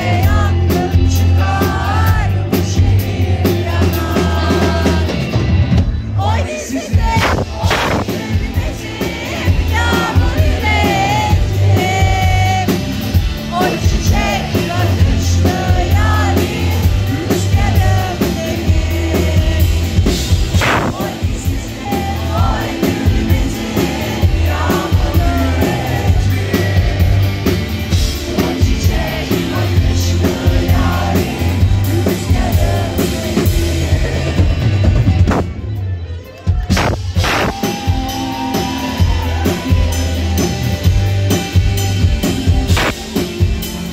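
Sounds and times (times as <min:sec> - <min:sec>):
crowd singing along: 0:00.0 - 0:35.7, 0:36.7 - 0:43.9
loud live rock-rap song: 0:00.0 - 0:35.8, 0:36.5 - 0:43.9.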